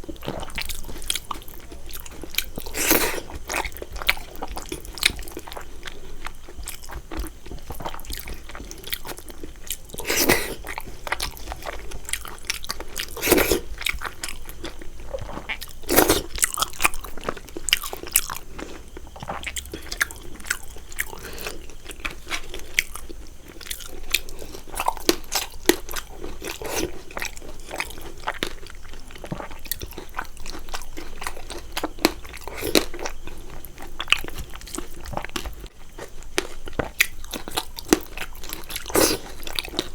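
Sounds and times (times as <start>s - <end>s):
chewing and crunching: 0.0s - 39.9s.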